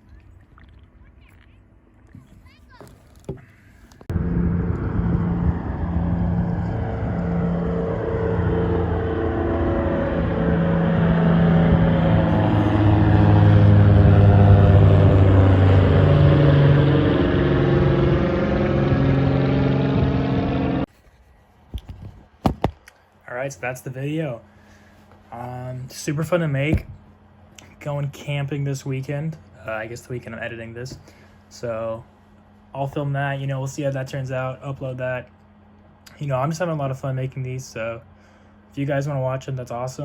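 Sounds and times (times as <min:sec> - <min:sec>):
vehicle engine running: 0:03.9 - 0:20.9.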